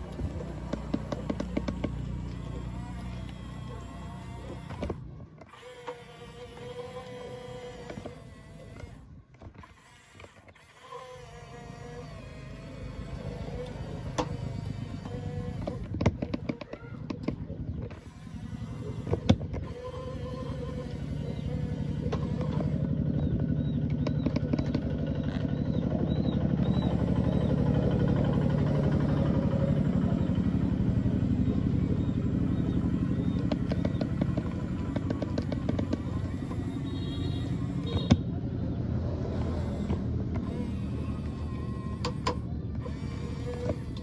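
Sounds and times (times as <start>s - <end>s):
electric motors whirring: 0.0s - 44.0s
sharp clicks: 26.6s - 38.3s.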